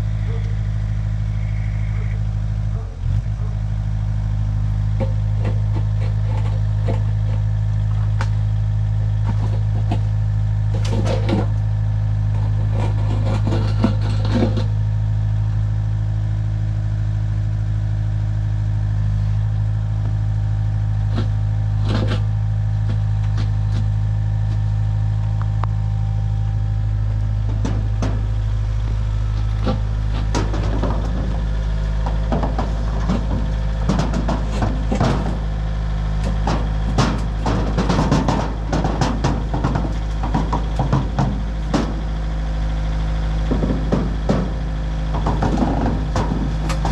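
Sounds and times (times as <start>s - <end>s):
heavy vehicle engine running: 0.0s - 46.9s
clanks and rattles: 4.9s - 8.4s, 9.1s - 11.7s, 12.3s - 14.8s, 21.1s - 24.6s, 27.1s - 46.9s.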